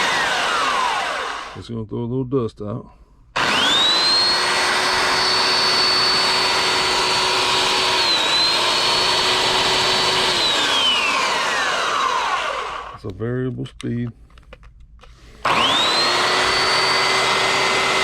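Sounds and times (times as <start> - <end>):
belt sander high whine: 0.0 - 1.6, 3.4 - 13.0, 15.3 - 18.0.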